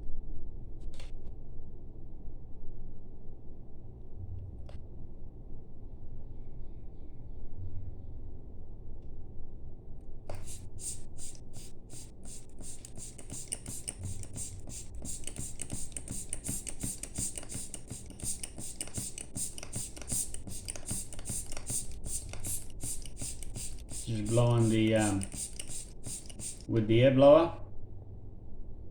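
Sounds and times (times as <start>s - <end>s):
air blower puffing: 10.3s - 26.9s.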